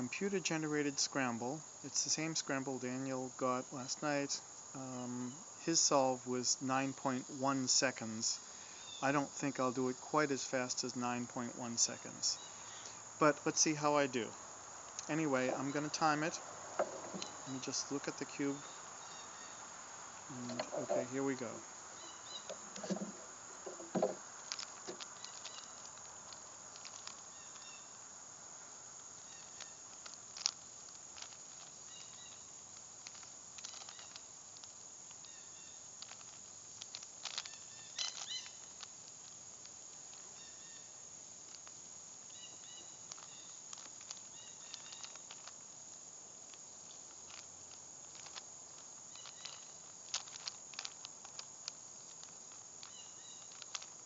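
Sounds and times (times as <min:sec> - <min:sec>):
puzzle cube clicking and rattling: 0:22.6 - 0:27.6, 0:29.4 - 0:35.3, 0:36.0 - 0:40.2, 0:43.1 - 0:45.6, 0:47.1 - 0:48.4, 0:49.2 - 0:54.0.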